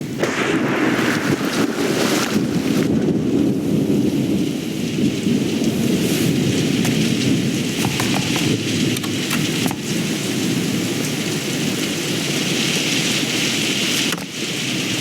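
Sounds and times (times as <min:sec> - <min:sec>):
heavy rain falling: 0:00.0 - 0:15.0
low thunder rumble: 0:00.0 - 0:15.0.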